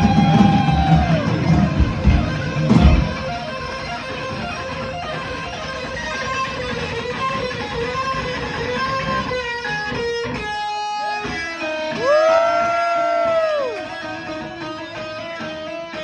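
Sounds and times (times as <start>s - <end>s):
heavy metal band playing: 0.0s - 12.6s
distorted electric guitar: 0.0s - 16.0s.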